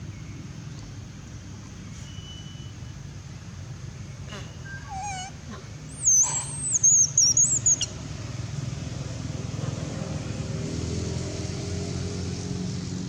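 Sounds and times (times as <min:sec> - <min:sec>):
baby monkey squealing: 0:04.4 - 0:07.9.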